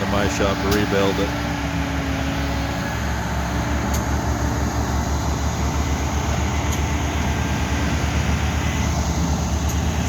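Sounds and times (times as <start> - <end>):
diesel engine running under load: 0.0 - 10.0.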